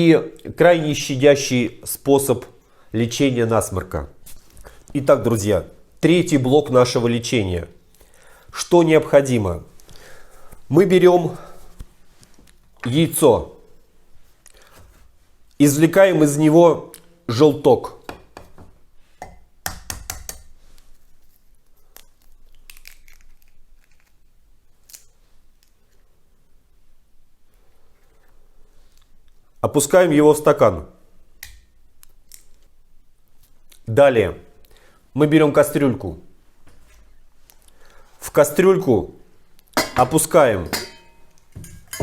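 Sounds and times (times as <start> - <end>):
egg shell tapping: 18.0 - 20.6.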